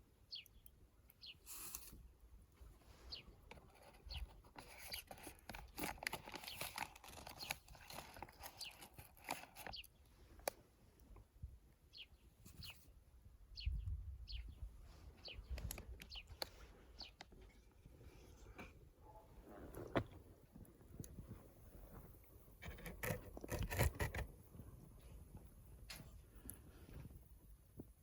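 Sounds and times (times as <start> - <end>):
small birds chirping: 0.1 - 2.1, 2.8 - 11.2, 11.8 - 17.6
twigs crackling and snapping: 5.4 - 10.6.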